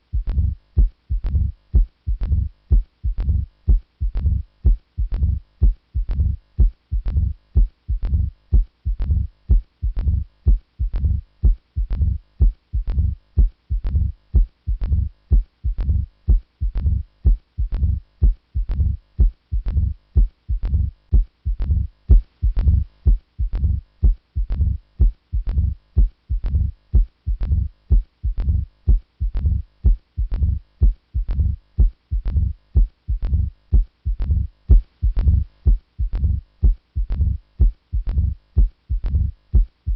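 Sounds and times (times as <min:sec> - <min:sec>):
heartbeat through stethoscope: 0:00.0 - 0:39.9.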